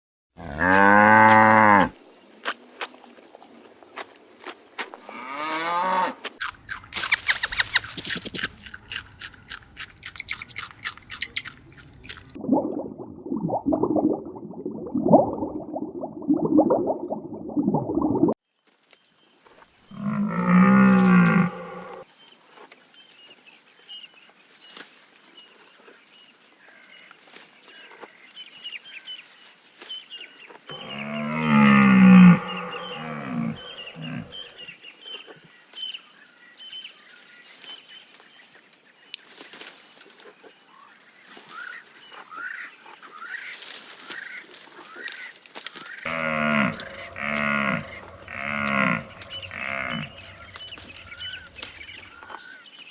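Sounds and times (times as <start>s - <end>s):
cow mooing: 0.4s - 1.9s, 19.9s - 22.0s, 30.7s - 34.5s, 46.1s - 51.8s.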